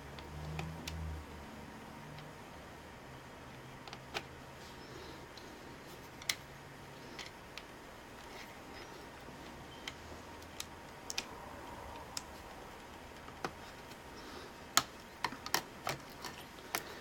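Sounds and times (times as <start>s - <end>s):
small plastic parts clicking: 6.2s - 6.4s, 7.1s - 8.4s, 9.8s - 11.3s, 14.7s - 16.9s.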